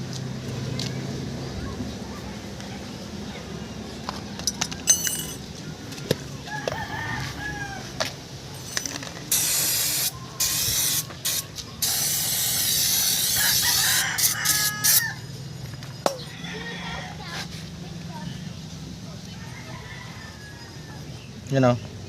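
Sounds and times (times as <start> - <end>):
rooster crowing: 6.5 - 8.1, 13.2 - 15.4, 16.1 - 17.4, 19.3 - 21.1
hissing air or spray: 9.3 - 15.0.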